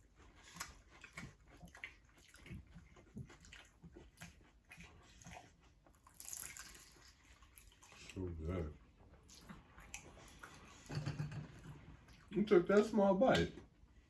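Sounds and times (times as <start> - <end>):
chewing crispy food: 0.0 - 10.8.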